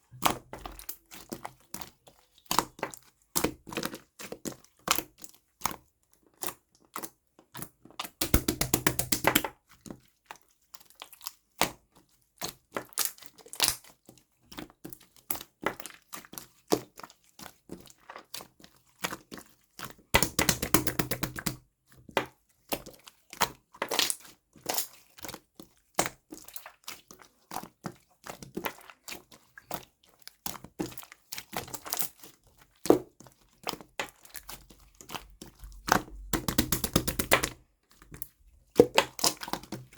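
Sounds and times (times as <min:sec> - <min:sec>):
slime being squished by hand: 0:08.0 - 0:09.6, 0:19.0 - 0:29.8, 0:30.4 - 0:39.9.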